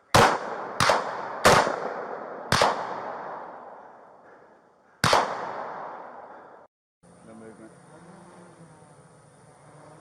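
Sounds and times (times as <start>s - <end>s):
gunshots with echo: 0.0s - 6.7s.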